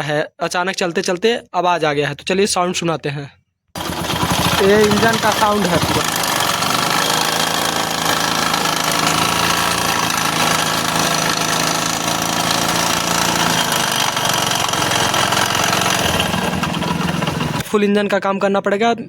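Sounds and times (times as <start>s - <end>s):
motorcycle engine knocking: 3.8s - 17.6s.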